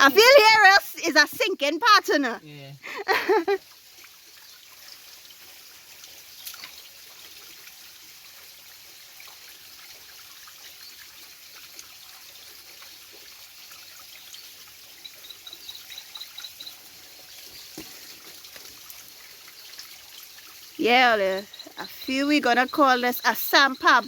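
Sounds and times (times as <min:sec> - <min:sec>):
spring water trickling: 0:00.0 - 0:24.0
high-pitched ticks: 0:20.8 - 0:24.0.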